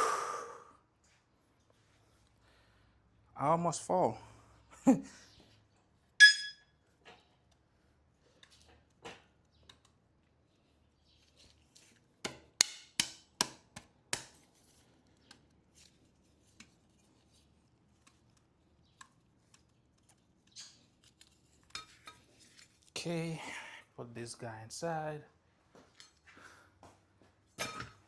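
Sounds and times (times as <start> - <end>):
sharp ringing metal clanks: 6.2 - 6.6.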